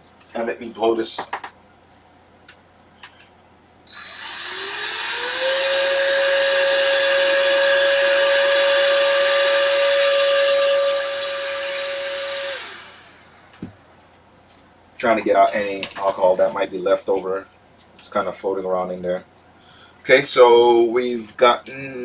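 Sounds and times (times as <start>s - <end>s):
electric air blower whine: 3.9s - 14.0s.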